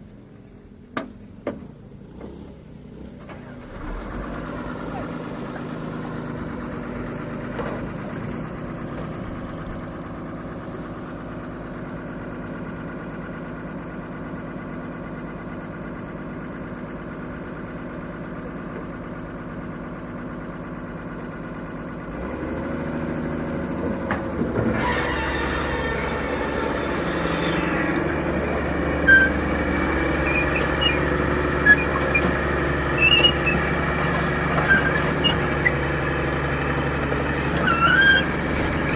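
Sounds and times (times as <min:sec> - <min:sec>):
heavy diesel machinery: 0:00.0 - 0:38.9.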